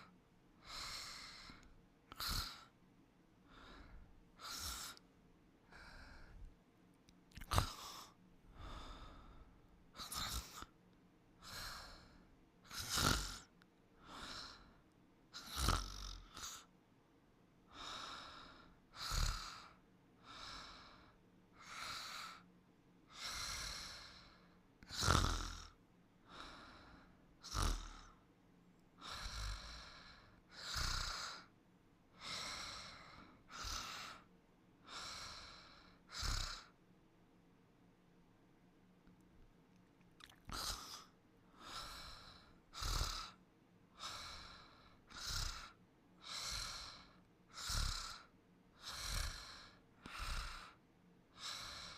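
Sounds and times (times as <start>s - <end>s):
person snoring: 0.7s - 2.7s, 4.4s - 5.0s, 7.3s - 8.1s, 10.0s - 10.7s, 12.7s - 13.5s, 15.4s - 16.7s, 18.4s - 19.8s, 24.9s - 25.8s, 27.4s - 28.2s, 29.0s - 31.5s, 35.0s - 36.8s, 40.2s - 43.4s, 44.0s - 50.8s.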